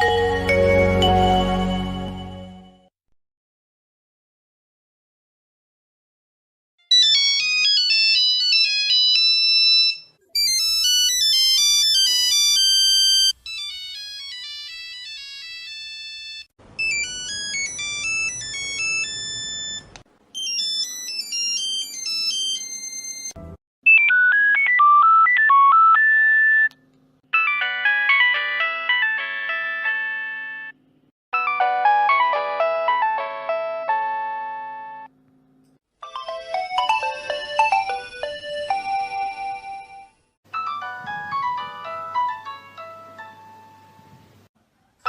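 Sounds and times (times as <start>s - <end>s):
mobile phone ringtones: 6.9s - 26.7s, 36.0s - 43.3s.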